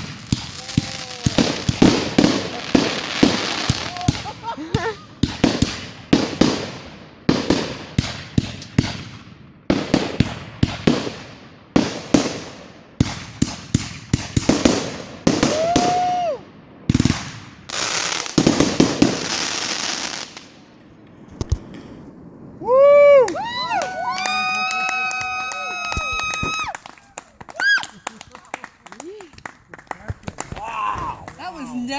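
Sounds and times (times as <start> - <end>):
fireworks bangs and crackles: 0.0 - 27.5, 28.1 - 31.9
firework whistle: 15.4 - 16.4, 22.6 - 26.8.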